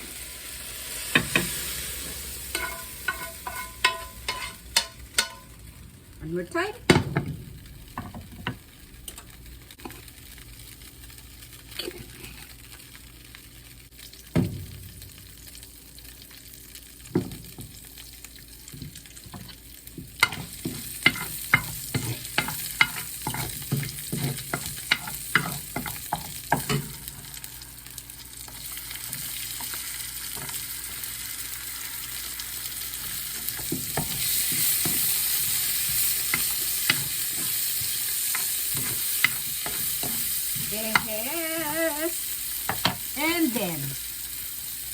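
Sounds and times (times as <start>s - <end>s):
food sizzling: 0.0s - 44.9s
utensil scraping a pan: 1.0s - 5.5s, 20.2s - 27.0s, 33.0s - 41.1s.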